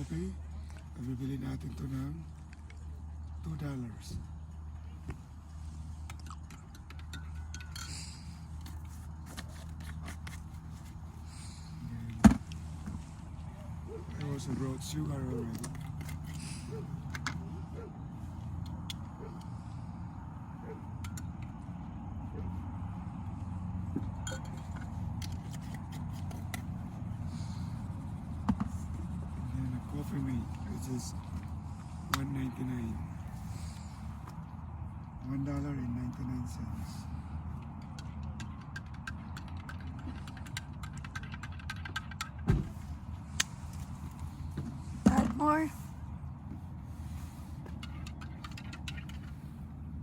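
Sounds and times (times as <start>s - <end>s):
steady low hum: 0.0s - 50.0s
coffee things clicking and crinkling: 5.9s - 13.0s, 14.0s - 17.5s, 37.6s - 42.5s
cups clinking: 6.0s - 10.9s, 24.0s - 26.3s.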